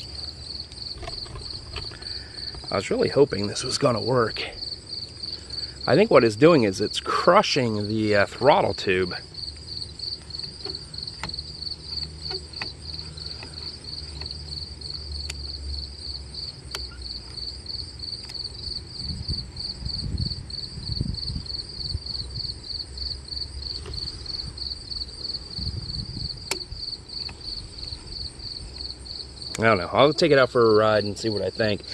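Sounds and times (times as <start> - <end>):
crickets chirping: 0.0 - 31.9
low rumbling: 18.6 - 29.5.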